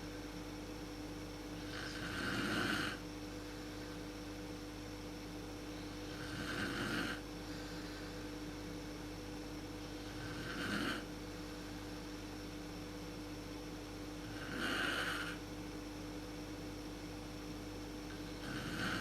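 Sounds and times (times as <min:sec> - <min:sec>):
steady low hum: 0:00.0 - 0:19.0
woman snoring: 0:01.6 - 0:03.0, 0:06.0 - 0:07.8, 0:10.0 - 0:11.1, 0:14.2 - 0:15.4, 0:18.2 - 0:19.0.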